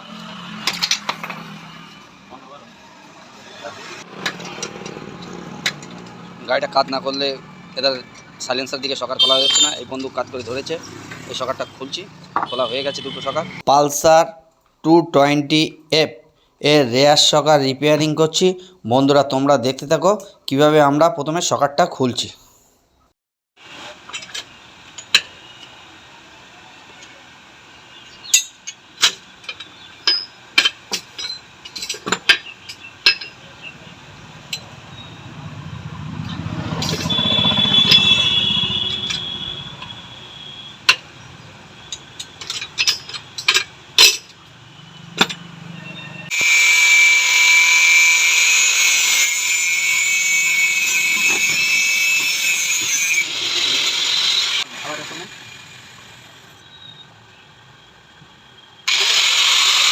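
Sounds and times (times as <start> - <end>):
hand tools clinking on metal: 28.3 - 33.6, 41.9 - 44.5
power tool whining: 36.1 - 40.8, 46.3 - 56.6, 58.8 - 59.9.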